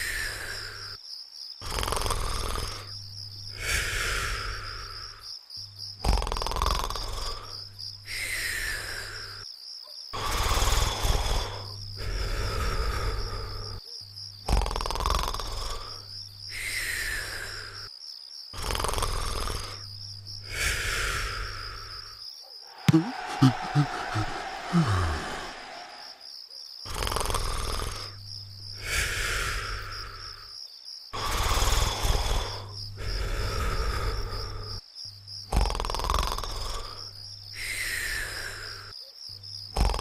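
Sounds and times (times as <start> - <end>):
cartoon snoring: 1.6 - 5.2, 6.0 - 9.4, 10.2 - 13.8, 14.4 - 17.9, 18.6 - 22.1, 22.8 - 26.2, 26.8 - 28.2, 28.8 - 30.5, 31.2 - 34.8, 35.5 - 38.9, 39.7 - 40.0.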